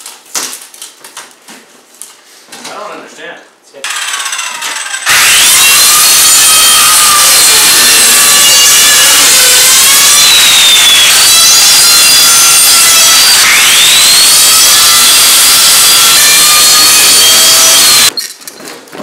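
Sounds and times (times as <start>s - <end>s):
power saw cutting wood: 3.8s - 18.1s.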